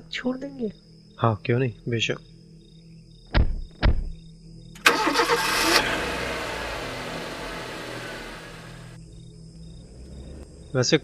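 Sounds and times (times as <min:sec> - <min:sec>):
car engine starting and running: 0:04.8 - 0:10.8.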